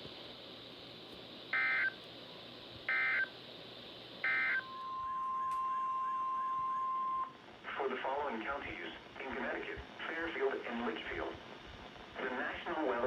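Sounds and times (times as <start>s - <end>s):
steady warning alarm tone: 1.5s - 2.0s, 2.9s - 3.3s, 4.2s - 7.4s
digital data tone bursts: 1.6s - 2.0s, 4.2s - 7.3s.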